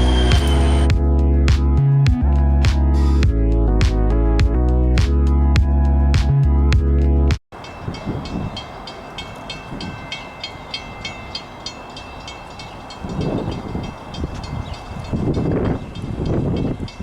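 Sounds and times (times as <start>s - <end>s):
high ringing ticks: 7.6s - 17.0s
wind on microphone: 7.6s - 17.0s.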